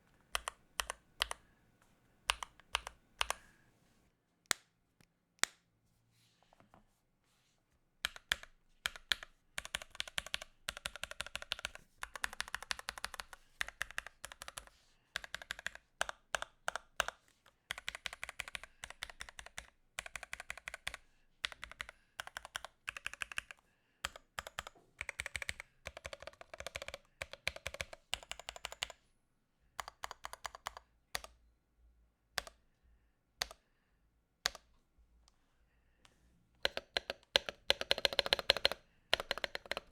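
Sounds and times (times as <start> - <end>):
mechanical keyboard typing: 0.3 - 1.4, 2.3 - 3.4, 8.0 - 29.0, 29.8 - 31.4, 36.6 - 39.9.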